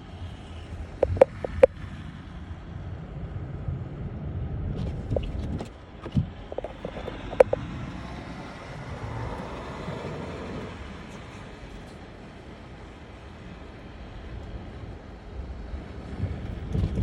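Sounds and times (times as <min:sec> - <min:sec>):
car engine and tyres rumbling: 0:00.0 - 0:17.0.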